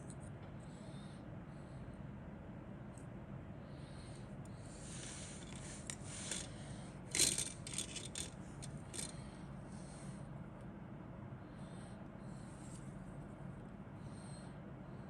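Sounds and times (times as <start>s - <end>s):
steady low hum: 0.0s - 15.0s
plastic parts rustling and scraping: 5.0s - 9.2s.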